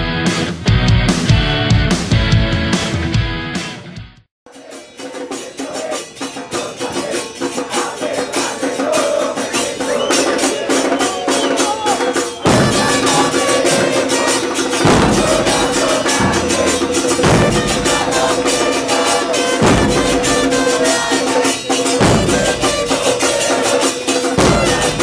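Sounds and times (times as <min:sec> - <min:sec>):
drums beating fast rhythm: 0:00.0 - 0:03.7, 0:04.5 - 0:25.0
band melody: 0:05.4 - 0:25.0
heavy bass drums: 0:12.4 - 0:23.5, 0:24.2 - 0:25.0.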